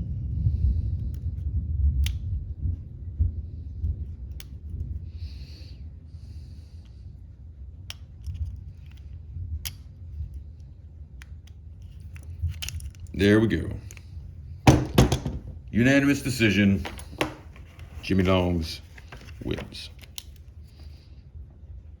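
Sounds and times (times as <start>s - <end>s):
lock pick metallic clicks: 11.2s - 13.2s, 16.8s - 17.6s
handling rumble: 12.0s - 20.9s.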